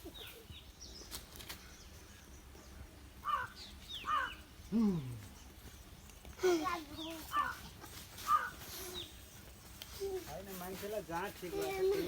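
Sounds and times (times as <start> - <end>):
faint background noise: 0.0 - 12.0
crows cawing: 3.2 - 4.4, 7.3 - 7.6, 8.2 - 8.6.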